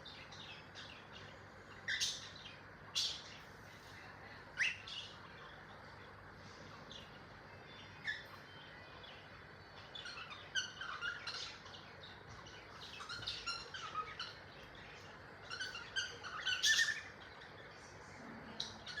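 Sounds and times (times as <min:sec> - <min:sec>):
cockatiel chirping: 0:09.8 - 0:11.8, 0:12.4 - 0:14.4, 0:15.4 - 0:17.2.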